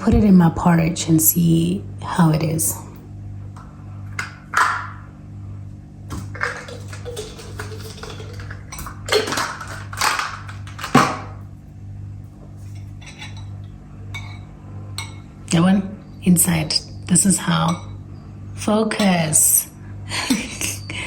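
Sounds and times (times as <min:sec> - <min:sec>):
low pulsing hum: 0:00.0 - 0:21.0
spoon scraping and tapping bowl: 0:12.6 - 0:15.3.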